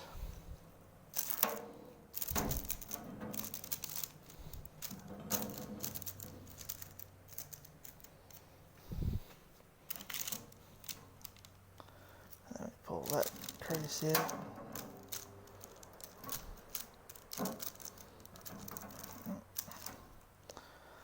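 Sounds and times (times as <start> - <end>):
magnets clicking on steel: 1.1 - 8.5, 9.9 - 11.6, 12.3 - 20.1
paper rustling: 2.2 - 8.3, 12.9 - 20.0.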